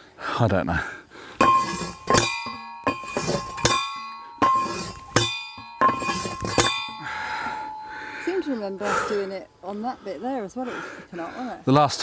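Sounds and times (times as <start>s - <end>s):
post driver metallic clangs: 1.4s - 8.8s.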